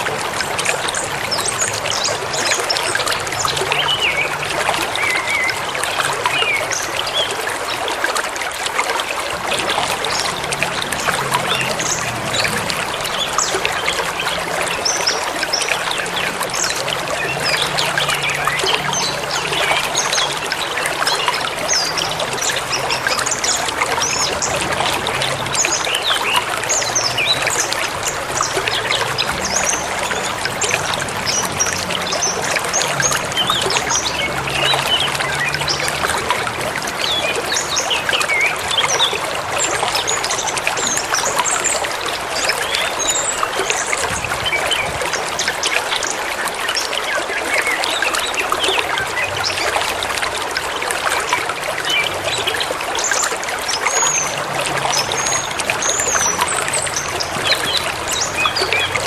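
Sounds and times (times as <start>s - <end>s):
river running: 0.0s - 59.0s.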